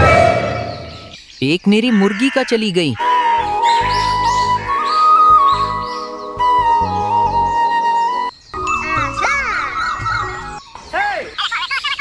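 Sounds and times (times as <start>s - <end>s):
melody of held notes: 8.6s - 10.6s.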